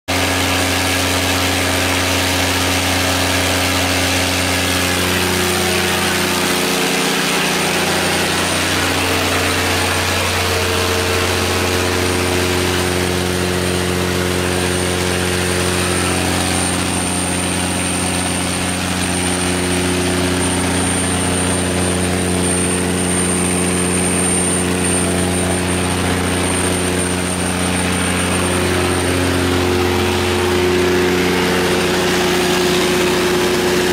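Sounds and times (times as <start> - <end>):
diesel generator engine running: 0.1 - 33.9
thin high whine: 0.5 - 33.9.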